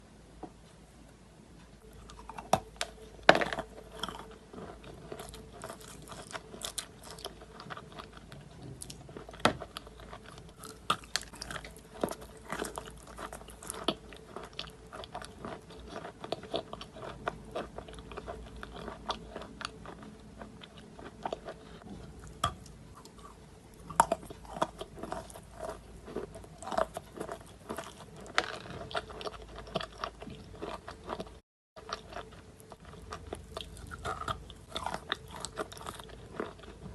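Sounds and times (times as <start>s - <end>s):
crunchy chewing of chalk: 1.8s - 36.9s.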